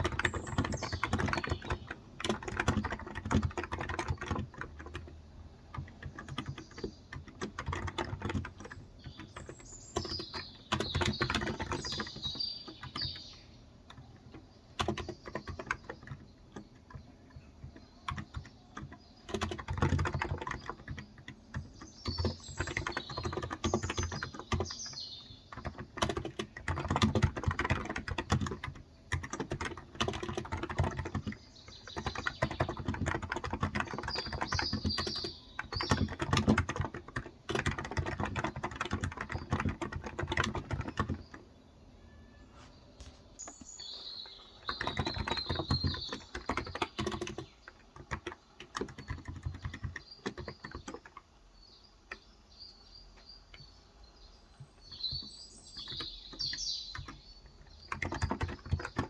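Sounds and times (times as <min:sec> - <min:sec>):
keyboard typing: 0:00.0 - 0:41.5, 0:43.0 - 0:51.3, 0:54.8 - 0:59.0
birds chirping: 0:00.0 - 0:59.0.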